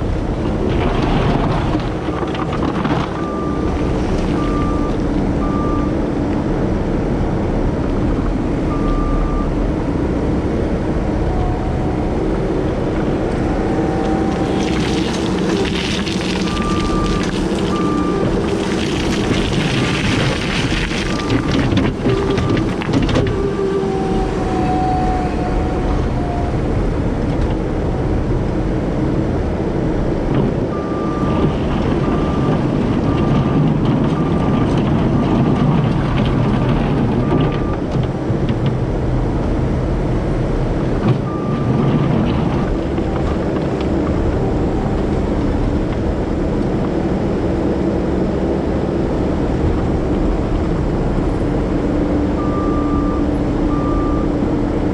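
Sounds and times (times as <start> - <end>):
heavy diesel equipment running: 0.0 - 54.9
reversing alarm beeping: 3.0 - 6.1, 11.3 - 26.7, 30.7 - 35.5, 52.4 - 54.5.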